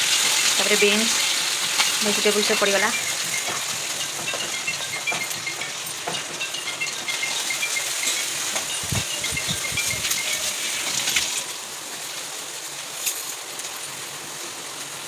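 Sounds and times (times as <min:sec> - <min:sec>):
vegetables sizzling in a pan: 0:00.0 - 0:13.0
spatula scraping a pan: 0:01.2 - 0:11.4.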